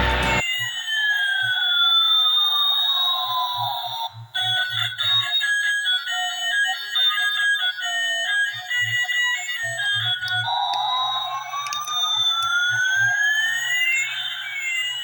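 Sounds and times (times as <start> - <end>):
wailing siren tone: 0.0 - 15.0
toy beeping jingle: 5.7 - 15.0.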